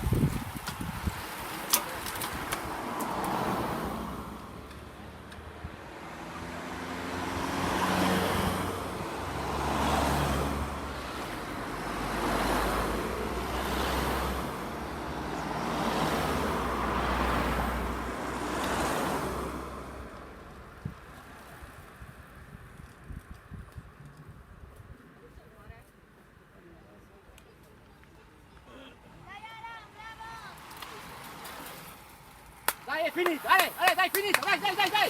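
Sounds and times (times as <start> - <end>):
wind noise: 0.0 - 3.5, 20.7 - 25.0
road noise: 0.0 - 35.0.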